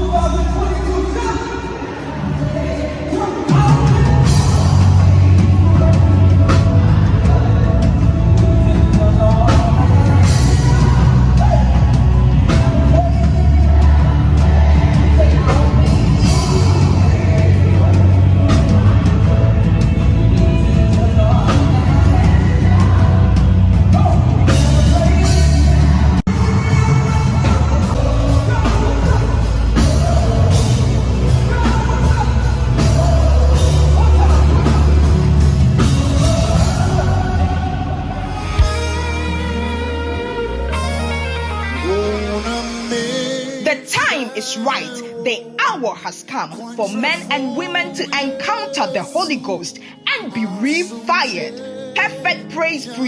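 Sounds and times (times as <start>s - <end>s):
live band music: 0.0s - 44.7s
voices singing: 0.0s - 53.0s.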